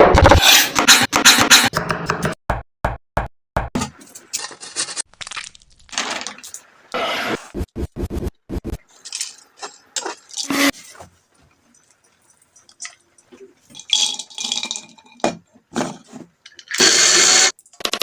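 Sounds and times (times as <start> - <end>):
utensils clinking and scraping: 8.9 - 16.8.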